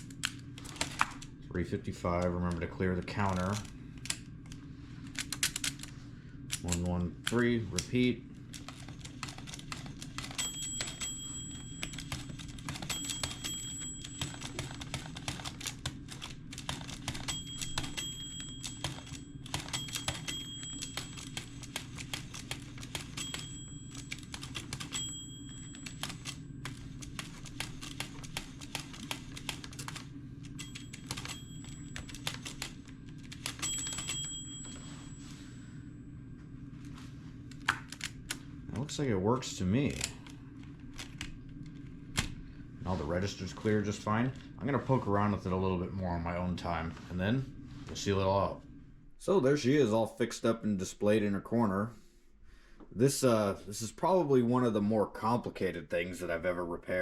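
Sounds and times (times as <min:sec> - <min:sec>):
mechanical calculator clattering: 0:00.0 - 0:01.3, 0:02.0 - 0:03.7, 0:06.5 - 0:35.2.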